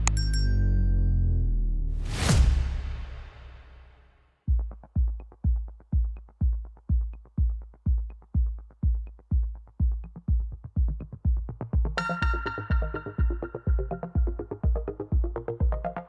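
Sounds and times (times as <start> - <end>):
kick drum: 4.5 - 16.0
hi-hat ticks: 4.6 - 12.7.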